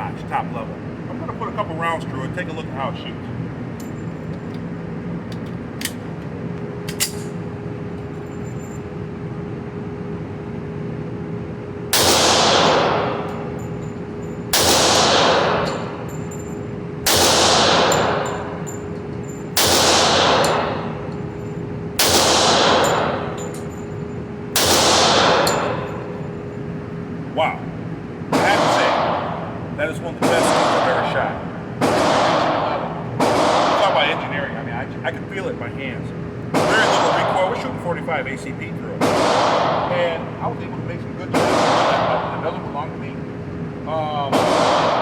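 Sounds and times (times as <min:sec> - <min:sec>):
faint steady hum: 0:00.0 - 0:45.0
pistol shots: 0:11.9 - 0:13.4, 0:14.5 - 0:16.0, 0:17.0 - 0:18.7, 0:19.6 - 0:21.1, 0:22.0 - 0:23.4, 0:24.6 - 0:26.1, 0:31.8 - 0:34.0, 0:39.0 - 0:39.9, 0:41.3 - 0:42.2, 0:44.3 - 0:45.0.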